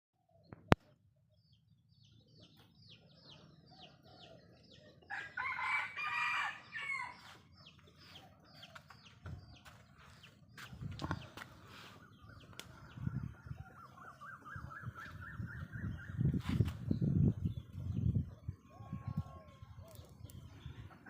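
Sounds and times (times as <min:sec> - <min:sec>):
rooster crowing: 0:05.1 - 0:07.2.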